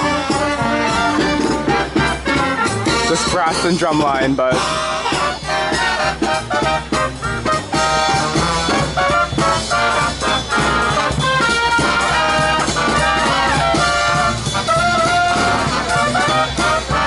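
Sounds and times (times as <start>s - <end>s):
drum hits: 0.0s - 17.0s
trumpets and trombones: 0.0s - 17.0s.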